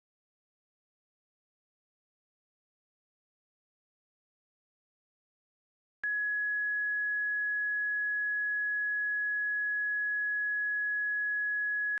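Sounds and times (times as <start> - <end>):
timer alarm steady tone: 6.0 - 12.0.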